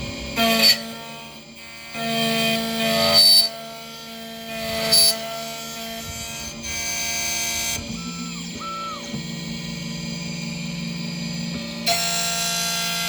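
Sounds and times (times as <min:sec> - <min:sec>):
key-cutting machine motor whining: 0:02.2 - 0:13.0
cutter rasping into metal: 0:04.5 - 0:08.4.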